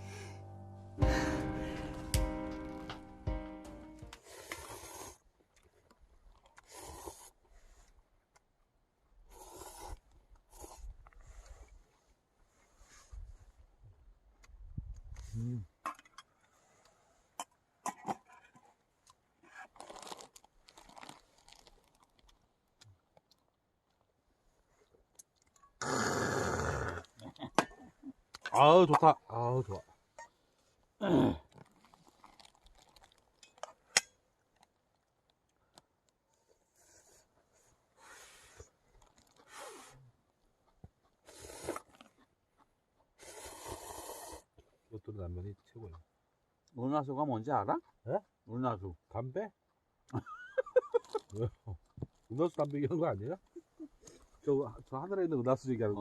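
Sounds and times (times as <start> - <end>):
person humming: 0.0 - 4.2
noodle slurping: 6.6 - 7.4, 9.4 - 11.2, 41.3 - 42.2, 43.2 - 44.5
person chewing and crunching food: 19.0 - 23.6, 31.4 - 33.9, 50.9 - 52.3.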